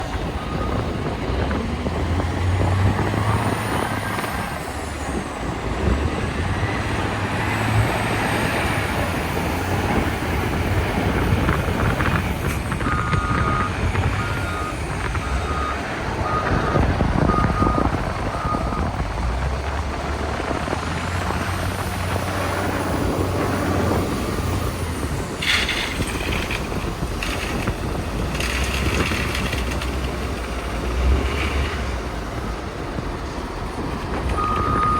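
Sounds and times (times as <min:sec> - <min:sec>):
wheel loader diesel engine revving: 0:00.0 - 0:34.9
backup alarm beeping: 0:34.4 - 0:34.9.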